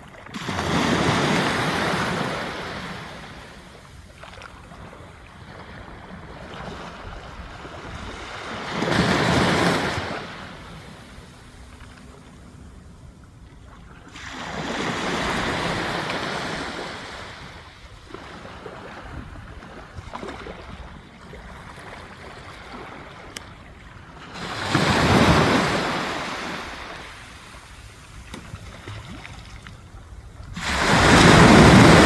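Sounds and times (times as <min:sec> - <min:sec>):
waves surging onto pebbles: 0:30.5 - 0:32.0.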